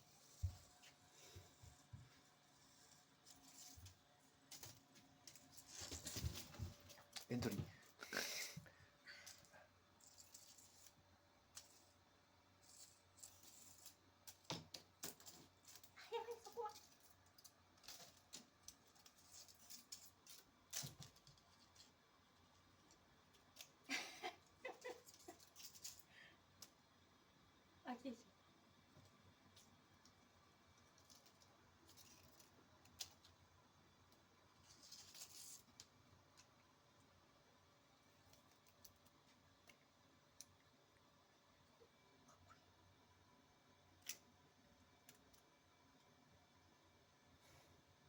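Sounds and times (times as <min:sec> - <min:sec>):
soft rustle: 0:00.0 - 0:08.0, 0:34.1 - 0:36.5.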